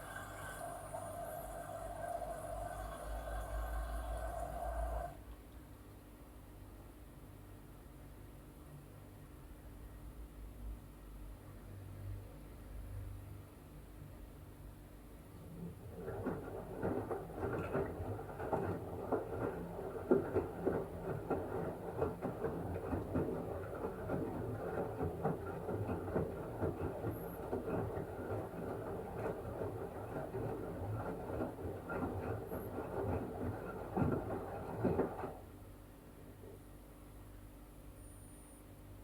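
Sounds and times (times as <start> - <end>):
washing machine drum churning: 0.0 - 5.2, 15.5 - 35.7.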